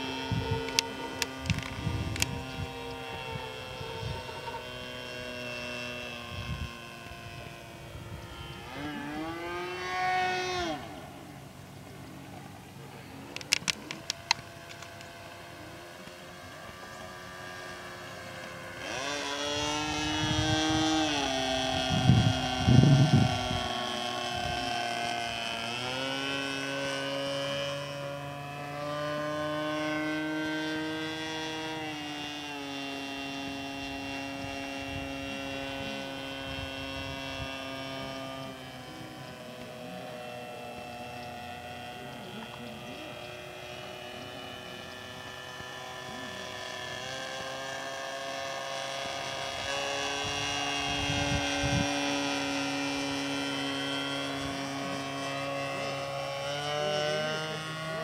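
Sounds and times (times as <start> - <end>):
model plane engine and propeller: 0.0 - 58.0
sharp clicks: 13.3 - 15.1.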